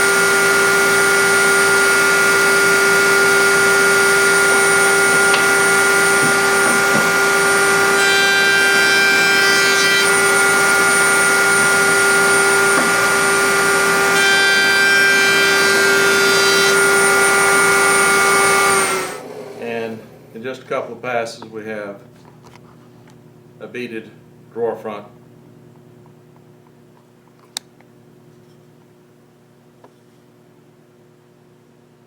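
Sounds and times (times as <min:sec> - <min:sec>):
router cutter cutting wood: 0:00.0 - 0:20.8
router whining: 0:00.0 - 0:20.8.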